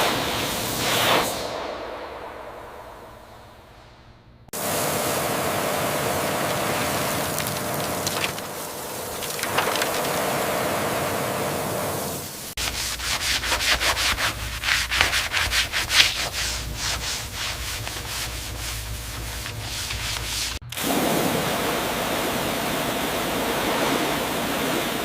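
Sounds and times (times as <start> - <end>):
steady hiss: 0.0 - 25.0
rhythmic sanding strokes: 4.6 - 20.6.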